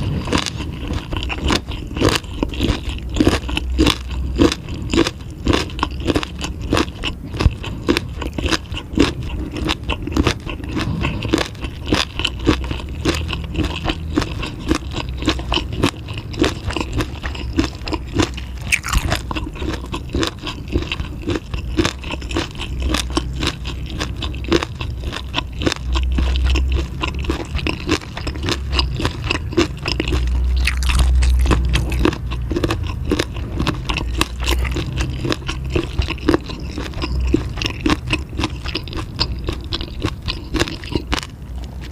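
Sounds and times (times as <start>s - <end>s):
chewing food with crunches: 0.0s - 41.9s.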